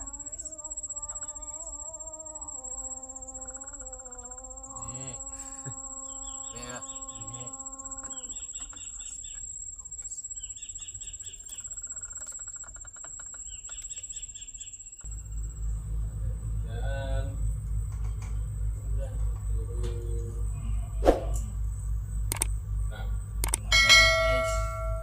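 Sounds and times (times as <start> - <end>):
insect high-pitched trill: 0.0 - 15.8, 18.8 - 25.0
rapid insect chirps: 0.0 - 25.0
low rumble: 15.1 - 25.0.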